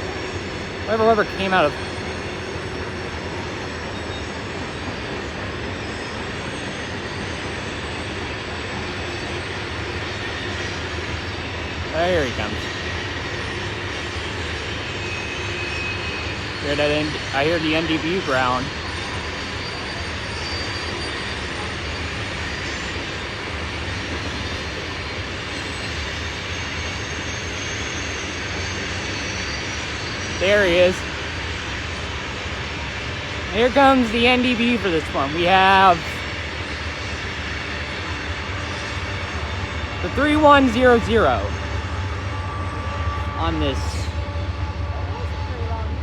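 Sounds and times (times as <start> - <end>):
freight train wheels on rails: 0.0 - 46.0.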